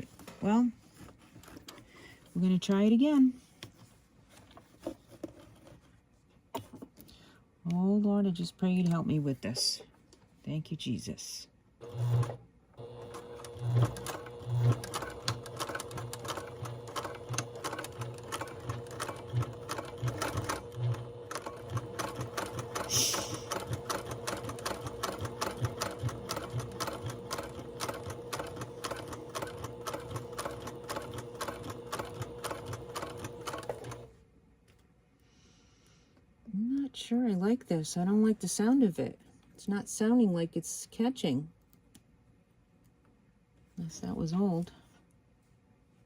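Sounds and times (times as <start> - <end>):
sewing machine stitching: 11.8 - 34.1.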